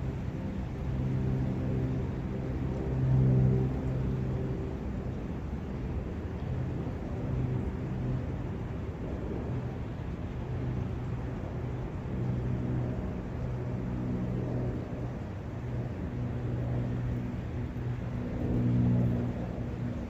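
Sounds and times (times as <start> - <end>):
wind: 0.0 - 20.0.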